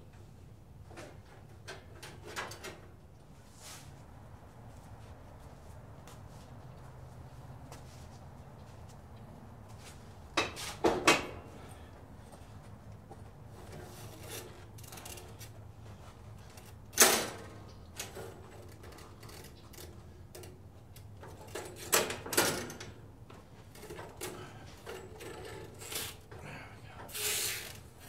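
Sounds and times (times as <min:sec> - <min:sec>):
short metal scrape: 0:27.1 - 0:27.8.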